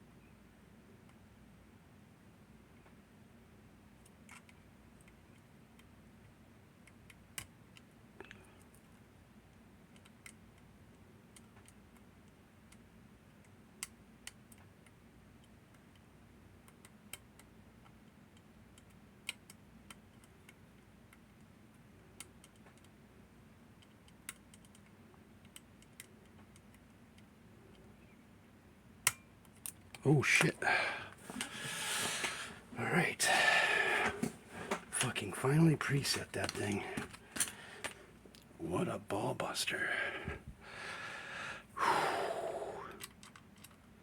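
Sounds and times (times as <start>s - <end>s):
low hiss: 30.0s - 43.1s.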